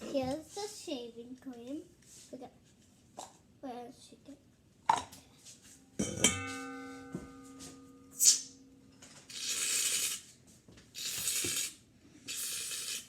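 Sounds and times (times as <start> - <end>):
ringing tone: 6.2 - 9.0
aerosol can hissing: 11.0 - 13.0.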